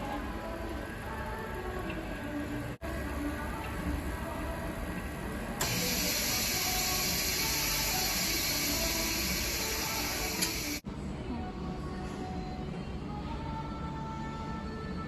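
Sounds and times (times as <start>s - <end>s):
machine hiss of moving air: 5.6s - 10.8s.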